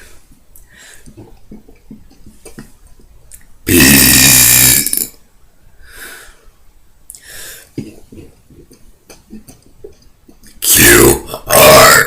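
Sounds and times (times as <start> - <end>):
girl breathing: 0.0 - 1.1, 5.7 - 6.6, 7.2 - 7.8
small throat noises: 1.0 - 2.7, 7.1 - 12.0.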